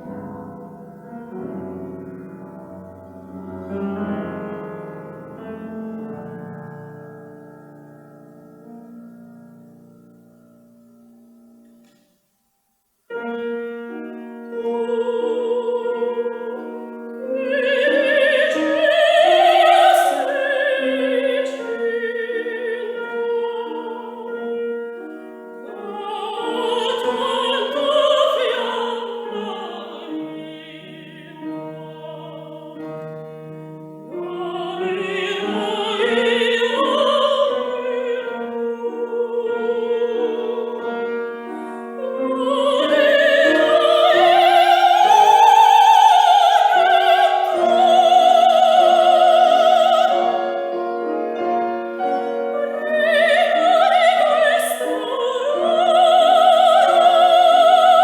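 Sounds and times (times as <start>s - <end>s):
piano accompaniment: 0.0s - 12.2s, 13.0s - 58.0s
operatic soprano singing: 13.9s - 58.0s.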